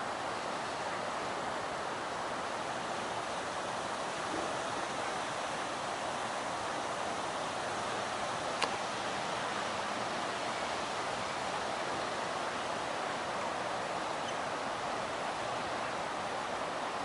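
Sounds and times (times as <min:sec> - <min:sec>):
rain hissing: 0:00.0 - 0:17.0
sharp tick: 0:08.6 - 0:08.8.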